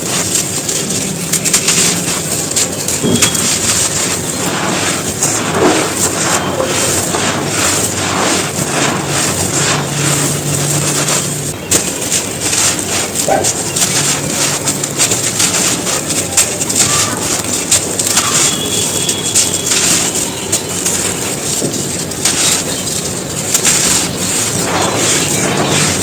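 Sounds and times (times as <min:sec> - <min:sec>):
soft bricks being crushed: 0:00.0 - 0:26.0.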